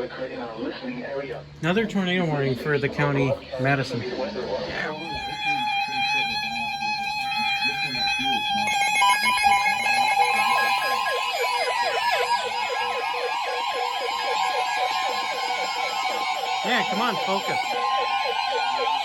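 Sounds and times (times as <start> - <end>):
siren-like wail: 4.8 - 19.0.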